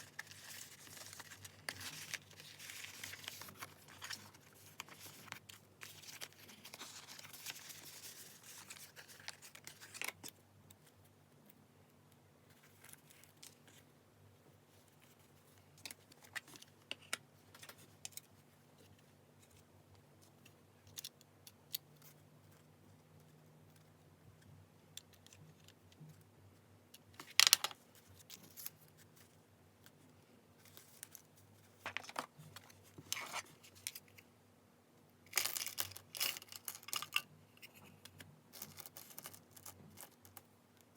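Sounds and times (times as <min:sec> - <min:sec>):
paper rustling and crinkling: 0:00.0 - 0:10.3, 0:30.6 - 0:34.2.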